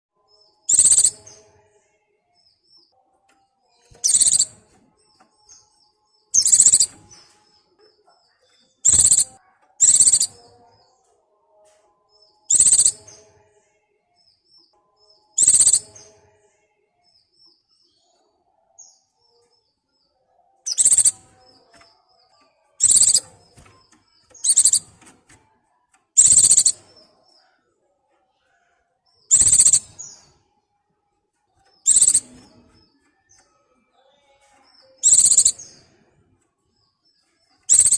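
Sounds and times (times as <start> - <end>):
high-pitched bird calls: 0.7 - 1.5, 3.8 - 4.7, 6.3 - 7.4, 8.4 - 10.6, 12.5 - 13.2, 15.4 - 16.2, 20.6 - 21.9, 22.8 - 25.2, 26.2 - 27.1, 29.2 - 30.4, 31.8 - 33.4, 34.8 - 35.9, 37.6 - 37.9
soft bird twitters: 0.7 - 1.5, 3.8 - 4.7, 6.3 - 7.4, 8.5 - 10.6, 12.5 - 13.3, 15.4 - 16.2, 20.7 - 25.2, 26.2 - 27.5, 29.3 - 30.4, 31.8 - 32.7, 34.8 - 35.9, 37.6 - 37.9.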